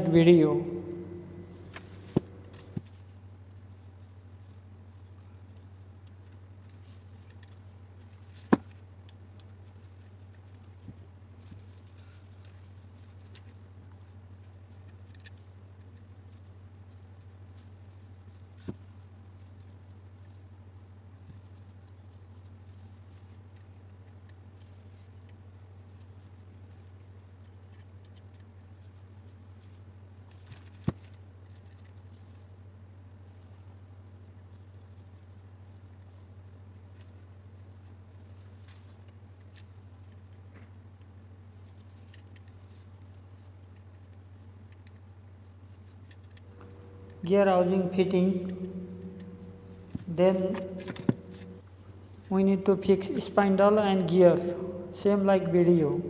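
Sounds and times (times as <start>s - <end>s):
steady low hum: 0.0s - 2.8s, 46.3s - 56.0s.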